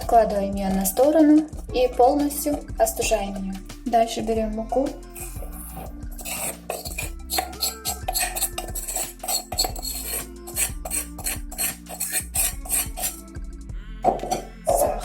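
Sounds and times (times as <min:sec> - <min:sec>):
utensils clinking against a bowl: 0:05.2 - 0:13.2.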